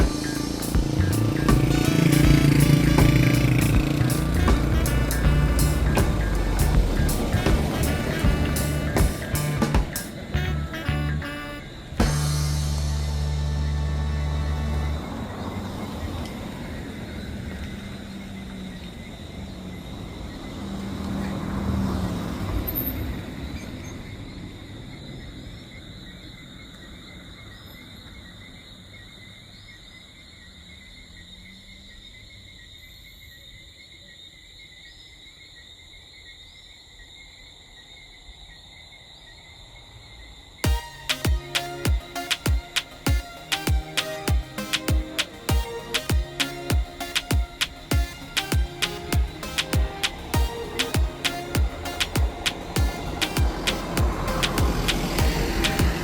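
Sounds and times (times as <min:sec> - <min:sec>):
motor vehicle passing: 0:00.0 - 0:10.9, 0:48.9 - 0:56.0.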